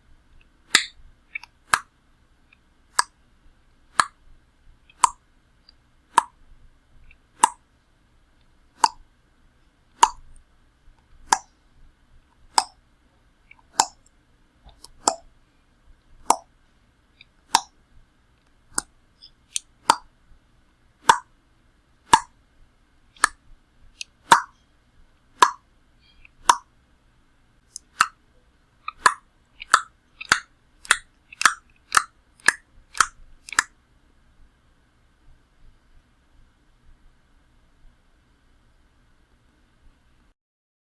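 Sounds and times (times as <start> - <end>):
tongue clicking: 10.0 - 10.2, 13.5 - 14.0, 14.7 - 15.2, 16.3 - 16.5, 28.9 - 33.7.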